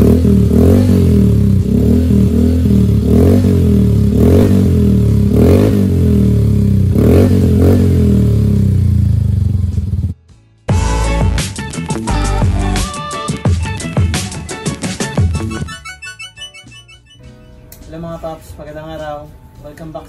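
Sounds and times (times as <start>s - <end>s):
motorcycle engine idling and revving: 0.0s - 10.2s.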